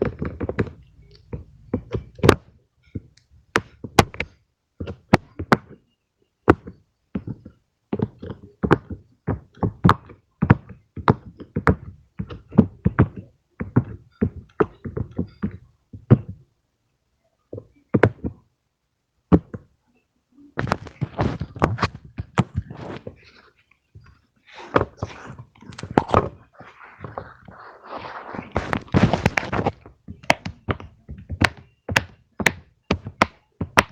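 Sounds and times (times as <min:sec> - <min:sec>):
handling sounds: 0:20.6 - 0:30.9.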